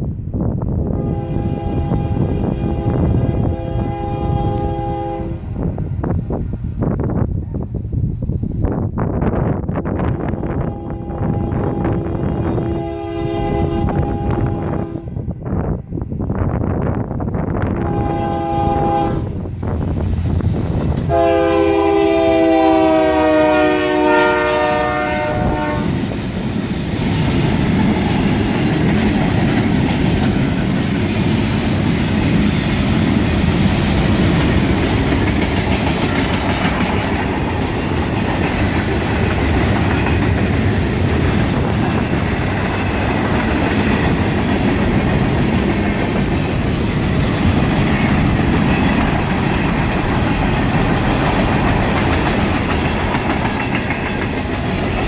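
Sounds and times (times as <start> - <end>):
train rumbling and clattering by: 0.0 - 55.0
locomotive air horn: 0.9 - 5.4, 10.6 - 15.2, 17.8 - 19.3, 21.1 - 26.1.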